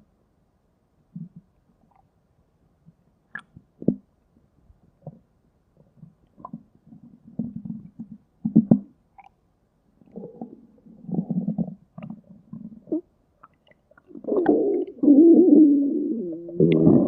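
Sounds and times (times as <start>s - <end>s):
stomach growling gurgles: 5.8s - 9.3s, 10.0s - 17.0s.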